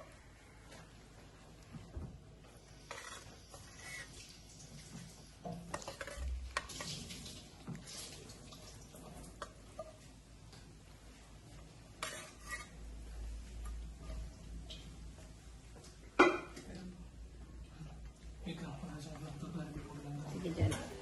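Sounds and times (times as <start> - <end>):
metal spoon scraping and clinking: 12.0 - 12.8.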